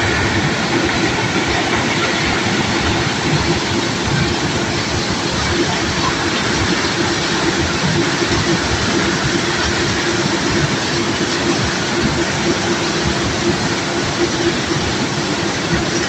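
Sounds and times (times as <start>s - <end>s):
machine hum: 0.0s - 16.0s.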